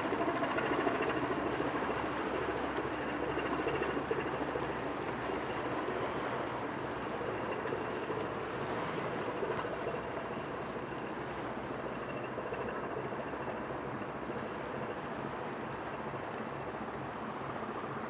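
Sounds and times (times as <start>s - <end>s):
ship diesel engine drone: 0.0s - 18.0s
rush of ship's wash: 4.4s - 11.7s, 14.2s - 18.0s.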